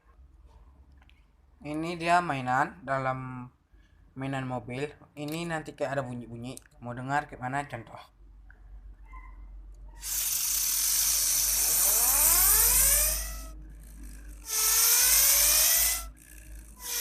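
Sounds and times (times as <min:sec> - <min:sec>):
toy car engine revving sound: 0:10.0 - 0:17.0.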